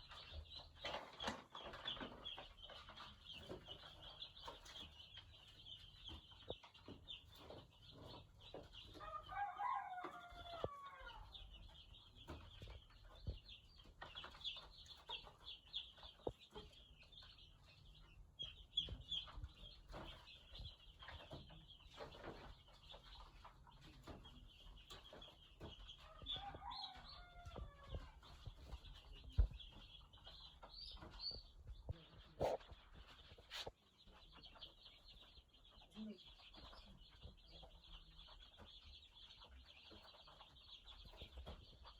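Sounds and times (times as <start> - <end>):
chicks cheeping: 0.0 - 41.9
adult chicken calling: 9.0 - 11.3.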